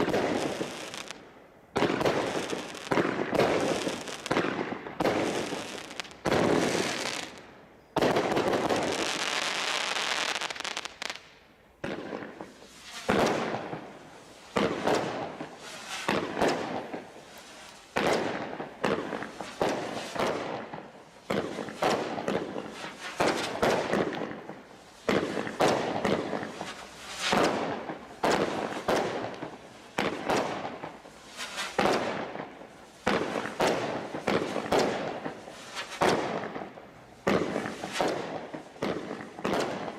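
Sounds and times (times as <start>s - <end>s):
fireworks banging: 0.0s - 39.9s
hissing crackle: 12.3s - 39.4s.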